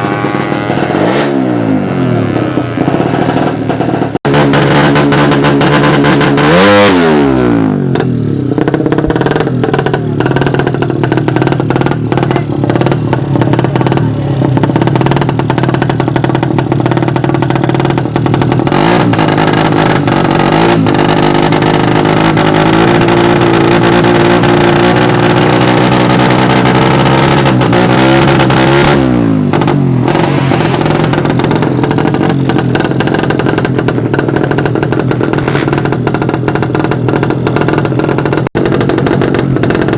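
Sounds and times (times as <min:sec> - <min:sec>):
motorcycle engines revving: 0:00.0 - 0:39.9.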